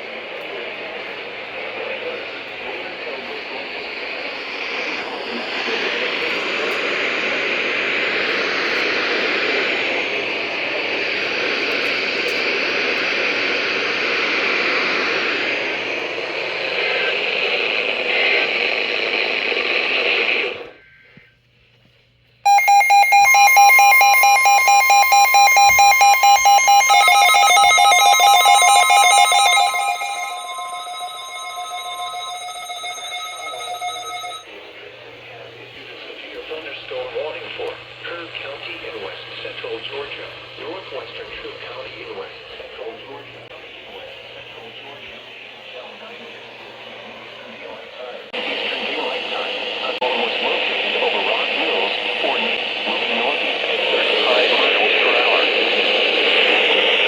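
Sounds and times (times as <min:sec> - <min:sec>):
radio static hiss: 0:00.0 - 0:21.2, 0:34.8 - 0:57.0
emergency alert tones beeping: 0:22.5 - 0:34.5.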